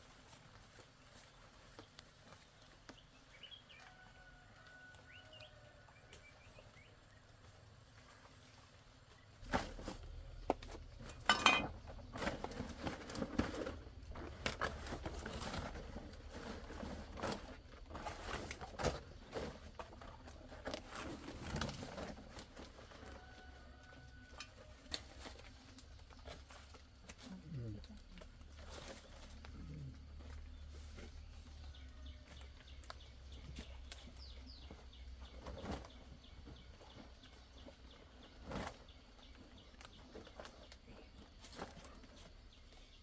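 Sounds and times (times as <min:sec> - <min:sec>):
rustling while handling things: 0:09.0 - 0:43.0.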